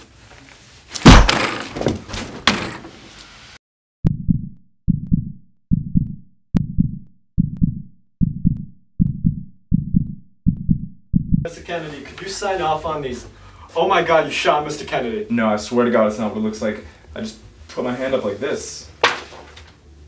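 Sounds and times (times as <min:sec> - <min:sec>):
heartbeat sound effect: 0:04.0 - 0:11.5.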